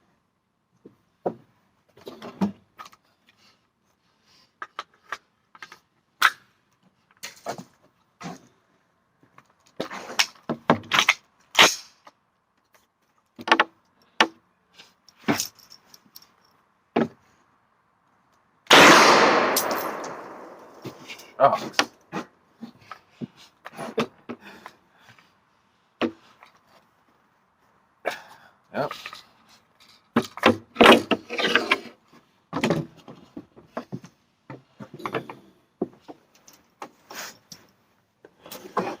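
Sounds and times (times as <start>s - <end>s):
rifle shot with echo: 18.7s - 21.2s
rifle handling clicks: 19.1s - 21.3s.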